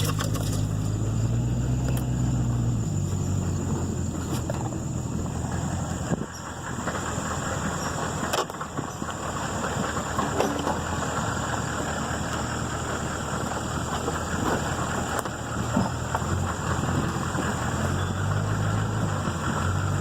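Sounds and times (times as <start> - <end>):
rattling and jolts: 0.0 - 1.0
truck engine drone: 0.0 - 20.0.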